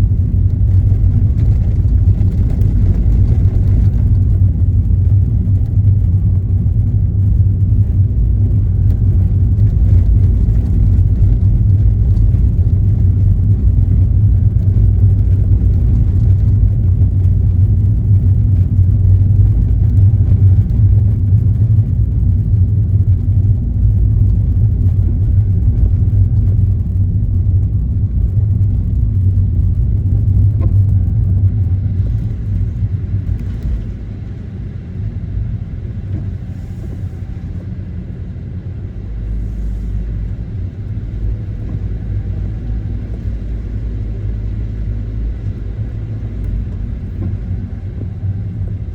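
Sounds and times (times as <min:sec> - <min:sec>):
car engine rumble: 0:00.0 - 0:48.9
road noise: 0:00.0 - 0:48.9.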